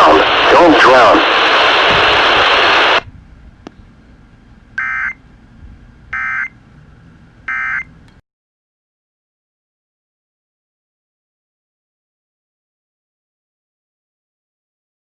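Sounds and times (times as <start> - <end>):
loud steady hiss: 0.0 - 8.2.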